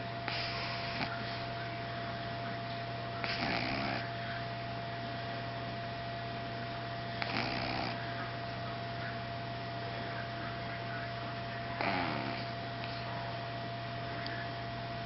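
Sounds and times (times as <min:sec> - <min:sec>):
steady electrical hum: 0:00.0 - 0:15.0
dog snoring: 0:00.2 - 0:01.4, 0:03.2 - 0:04.2, 0:07.2 - 0:08.0, 0:11.8 - 0:13.0.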